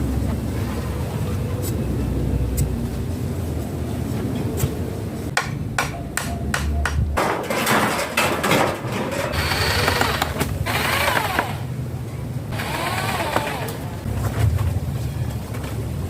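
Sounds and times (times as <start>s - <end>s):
hammer striking wood: 5.4s - 7.4s.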